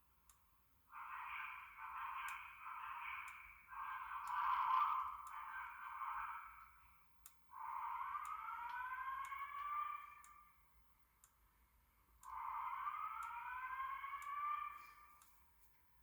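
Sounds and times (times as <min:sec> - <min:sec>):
rising siren-like sweep tone: 0:00.9 - 0:06.8, 0:07.5 - 0:10.6, 0:12.3 - 0:15.2.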